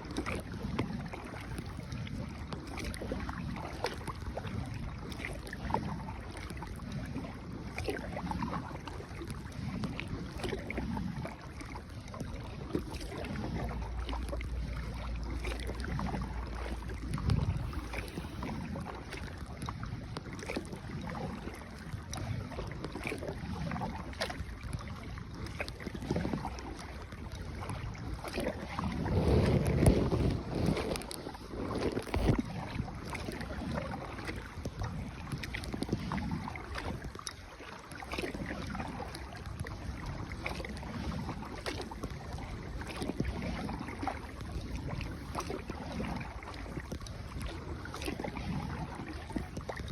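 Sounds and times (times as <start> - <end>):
paddle strokes: 0.0 - 49.9
water splashing: 0.0 - 49.9
wind buffeting microphone: 14.6 - 37.3.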